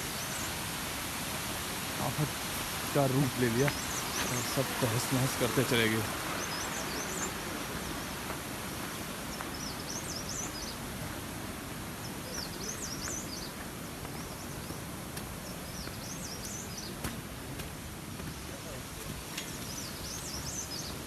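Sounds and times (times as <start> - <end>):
steady rushing noise: 0.0 - 11.8
bird chirping: 2.0 - 8.0, 12.0 - 13.6.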